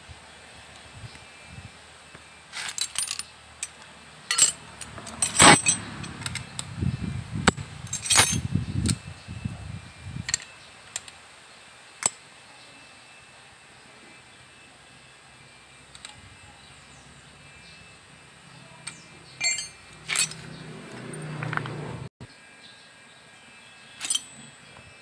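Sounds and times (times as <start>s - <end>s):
metal tools clinking on workbench: 2.6s - 6.7s, 7.5s - 8.5s, 18.9s - 22.0s, 24.0s - 24.6s
dull handling noise: 4.3s - 6.6s.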